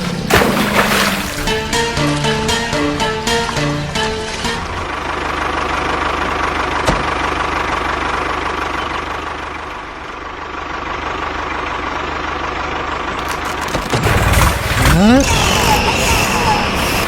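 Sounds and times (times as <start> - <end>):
engine idling: 0.0 - 17.0.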